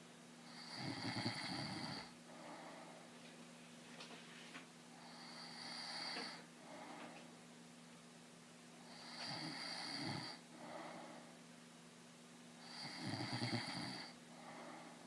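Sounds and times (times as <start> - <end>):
man snoring: 0.5 - 2.1, 5.0 - 6.4, 8.9 - 10.4, 12.6 - 14.2.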